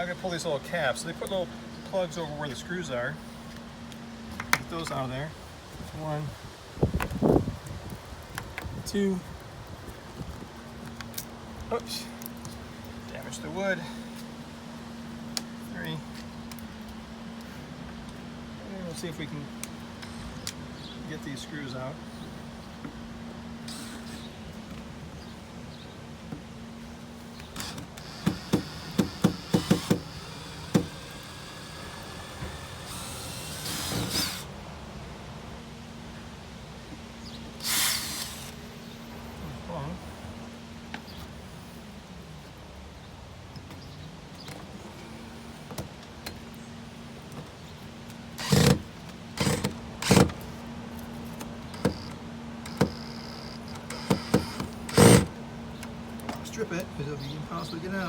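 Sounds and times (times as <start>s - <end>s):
drill clicks: 27.4s - 34.5s, 37.6s - 38.6s, 48.4s - 50.5s, 51.4s - 55.9s
power drill bursts: 27.5s - 34.5s, 37.6s - 38.6s, 48.4s - 50.4s, 51.8s - 55.4s.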